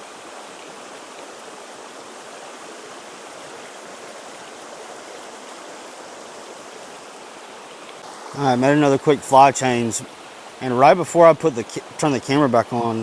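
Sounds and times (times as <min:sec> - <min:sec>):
creek water flowing: 0:00.0 - 0:13.0.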